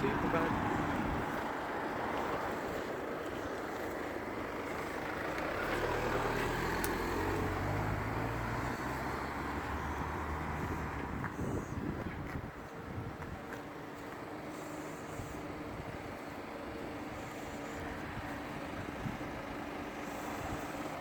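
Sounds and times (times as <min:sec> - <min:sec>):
road noise: 0:00.0 - 0:21.0
vehicle engine humming: 0:00.0 - 0:21.0.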